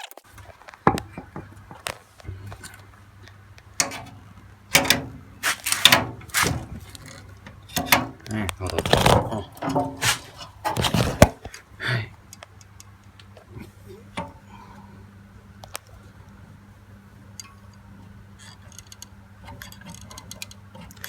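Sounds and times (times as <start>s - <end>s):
low hum: 0.3s - 21.0s
hand tools clicking and tapping: 0.5s - 2.8s, 3.8s - 11.6s.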